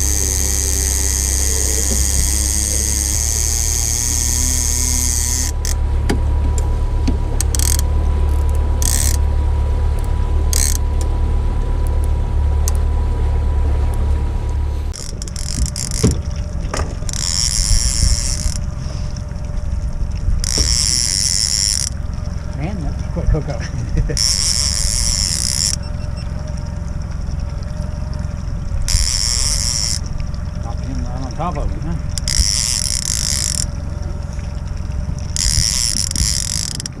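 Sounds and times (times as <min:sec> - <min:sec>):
fishing reel hiss and clicks: 0:00.0 - 0:05.8, 0:07.4 - 0:09.2, 0:10.5 - 0:10.8, 0:14.9 - 0:16.2, 0:17.0 - 0:19.2, 0:20.4 - 0:22.0, 0:24.1 - 0:26.2, 0:28.9 - 0:30.1, 0:32.1 - 0:33.8, 0:35.3 - 0:37.0
boat motor humming: 0:00.0 - 0:37.0.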